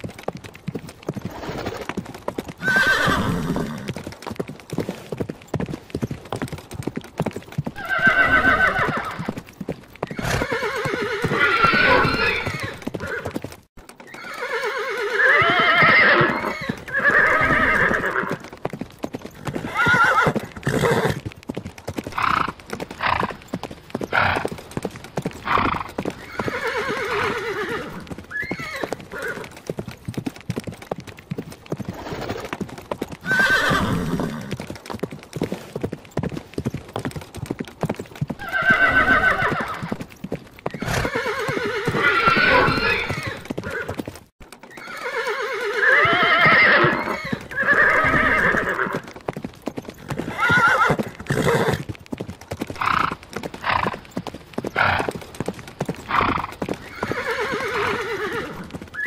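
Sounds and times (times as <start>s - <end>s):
hooves clopping: 0.0s - 59.0s
horses whinnying: 1.1s - 4.1s, 7.6s - 18.6s, 19.2s - 21.3s, 22.1s - 29.8s, 31.8s - 34.7s, 38.3s - 49.2s, 49.8s - 51.9s, 52.7s - 59.0s.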